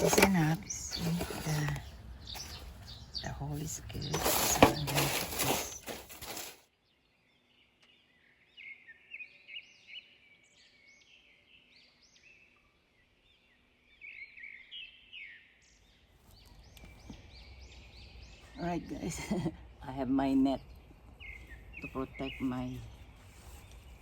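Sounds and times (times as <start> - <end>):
songbirds chirping: 0.0 - 24.0.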